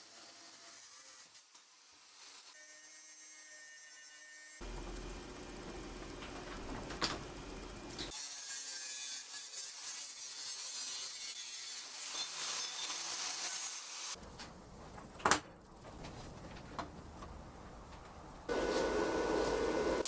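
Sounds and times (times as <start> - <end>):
angle grinder cutting: 18.5 - 20.0.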